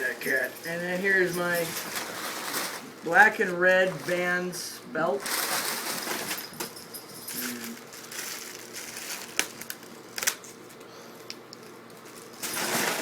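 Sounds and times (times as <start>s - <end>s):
packaging rustling: 0.2s - 4.6s, 5.2s - 13.0s.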